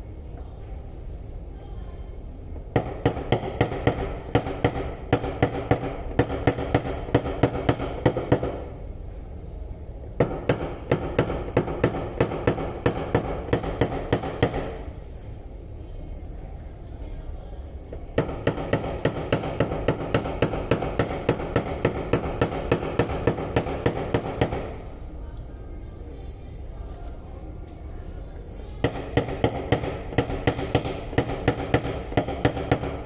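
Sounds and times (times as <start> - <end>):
hammer striking metal panel: 28.8 - 33.0.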